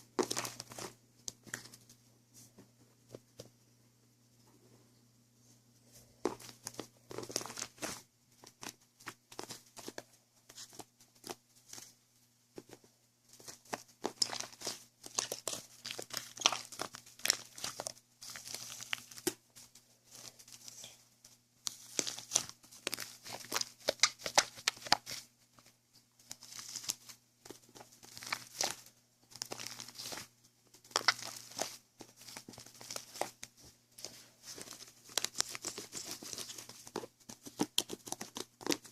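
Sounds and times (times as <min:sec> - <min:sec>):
crinkling and tearing: 0:00.0 - 0:01.9, 0:06.2 - 0:11.9, 0:12.6 - 0:21.0, 0:21.6 - 0:38.9.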